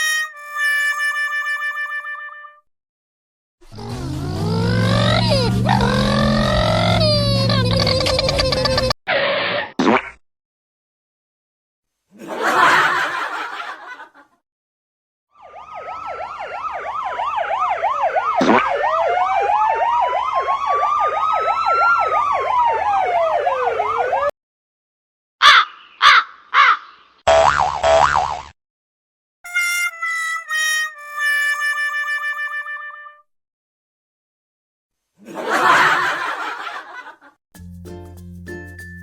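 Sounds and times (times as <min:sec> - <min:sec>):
toy siren warbling: 0:03.8 - 0:08.5.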